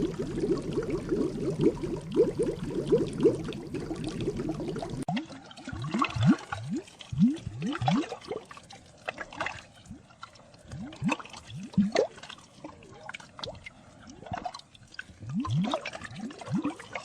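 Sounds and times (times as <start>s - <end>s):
air bubbles rising through water: 0.0s - 8.6s, 9.2s - 12.2s, 15.2s - 17.0s.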